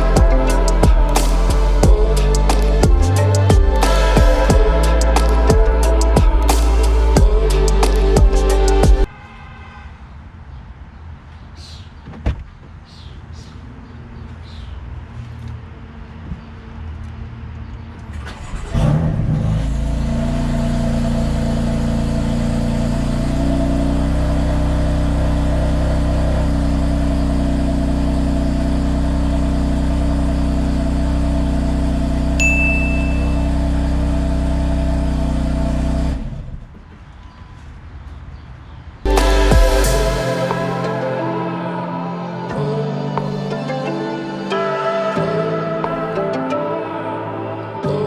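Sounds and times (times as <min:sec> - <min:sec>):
car engine idling: 0:00.0 - 0:09.1
short high beep: 0:32.4 - 0:33.5.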